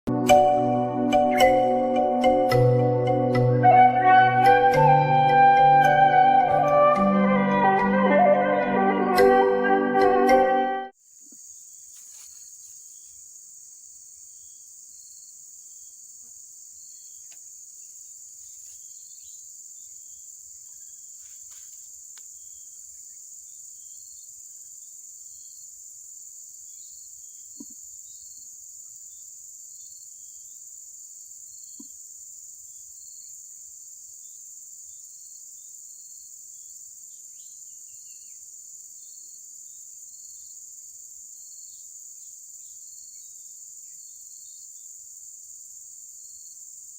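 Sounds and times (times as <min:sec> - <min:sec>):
faint insect chirps: 0:10.9 - 0:46.9
crickets chirring: 0:11.0 - 0:46.9.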